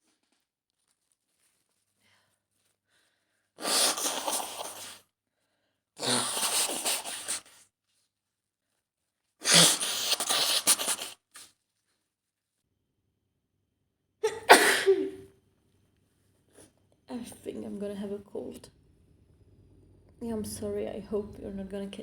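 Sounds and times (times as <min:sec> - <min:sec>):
woman sneezing: 0:03.6 - 0:05.0, 0:06.0 - 0:07.4, 0:09.4 - 0:11.2, 0:14.2 - 0:15.3.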